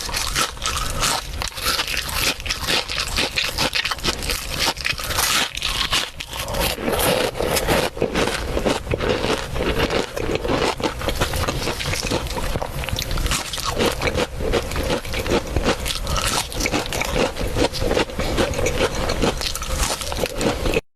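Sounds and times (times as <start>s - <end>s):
crunching and chewing crispy food: 0.0s - 20.8s.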